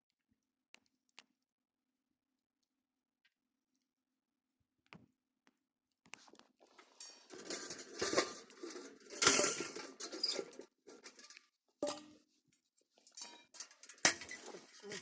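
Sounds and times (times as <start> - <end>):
objects rustling and scraping: 6.2 - 15.0.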